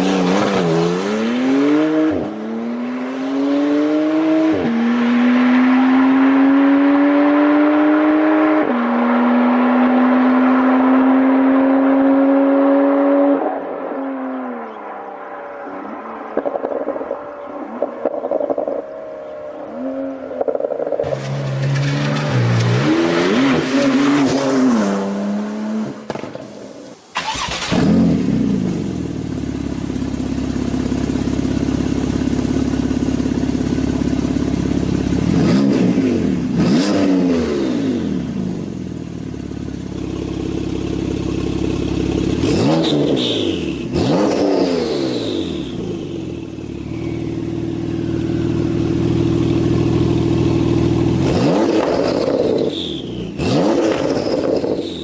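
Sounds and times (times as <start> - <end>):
sports car engine revving: 0.0 - 26.6, 27.2 - 55.0
car engine idling: 27.0 - 35.3, 38.5 - 42.5, 45.5 - 51.2.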